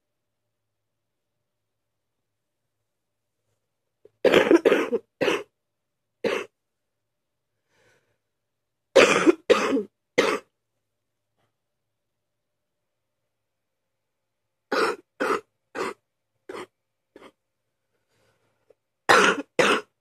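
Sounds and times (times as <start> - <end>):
person coughing: 4.2 - 5.5, 6.2 - 6.5, 9.0 - 10.5, 14.7 - 17.4, 19.1 - 20.0.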